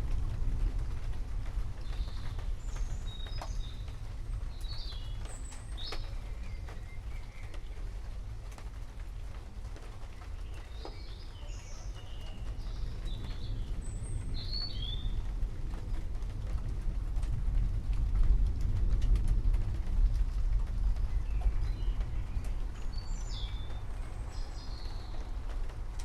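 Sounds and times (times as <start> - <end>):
distant thunder rumbling: 0.0 - 26.0
light rain pattering: 0.0 - 26.0
birds chirping: 1.7 - 16.3, 20.7 - 26.0.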